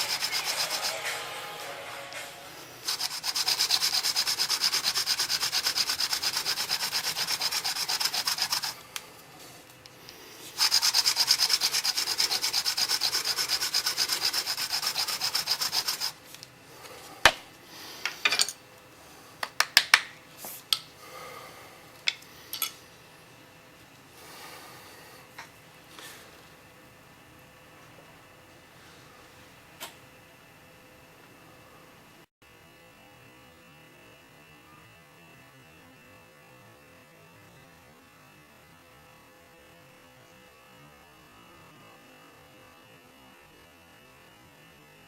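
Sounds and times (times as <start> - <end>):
hand drill grinding rub: 0.0 - 18.6
sharp clicks and taps: 19.4 - 20.9.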